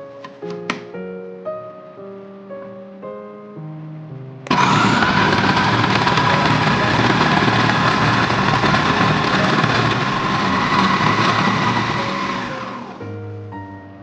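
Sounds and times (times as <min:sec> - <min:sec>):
food processor motor whirring: 0:04.5 - 0:13.0.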